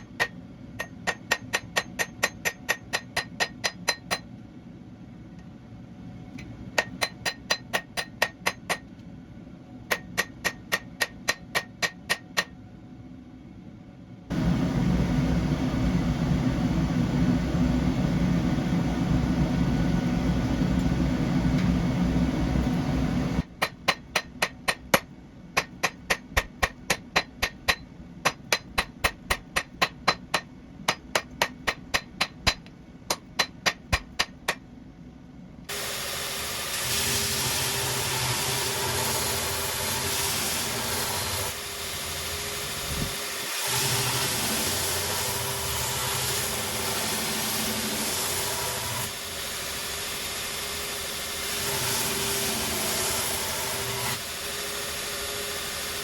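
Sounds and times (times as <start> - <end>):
hammer ringing on anvil: 0.0 - 4.3, 6.8 - 8.9, 9.9 - 12.5, 23.6 - 34.6.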